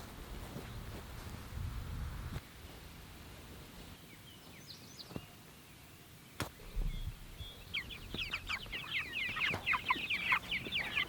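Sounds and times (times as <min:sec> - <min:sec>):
chicks cheeping: 0:06.4 - 0:11.0.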